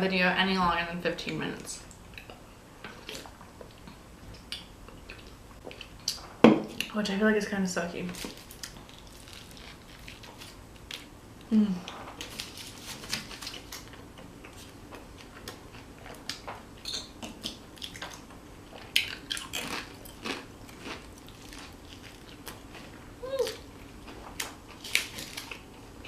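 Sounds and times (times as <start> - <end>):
crisp crunches: 8.2 - 11.1, 12.2 - 13.9
person humming: 11.5 - 11.9, 23.2 - 23.6.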